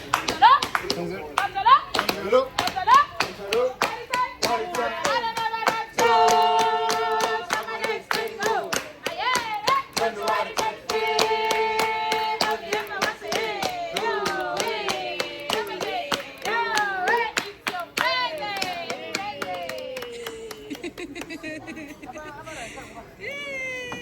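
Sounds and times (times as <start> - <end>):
hands clapping in rhythm: 0.0 - 21.6
group singing: 1.5 - 20.2.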